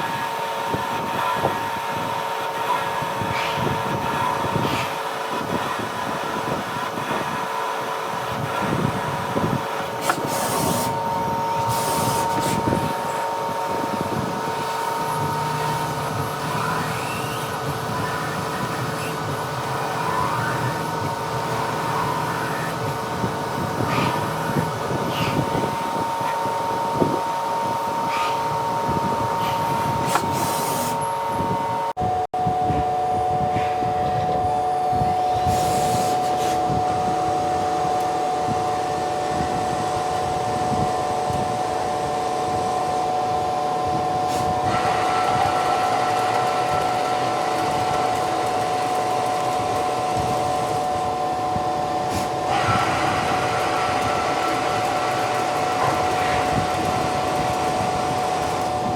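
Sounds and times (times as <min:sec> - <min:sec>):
lathe machine whine: 0:00.0 - 0:58.9
whirring cutting noise: 0:44.1 - 0:58.9.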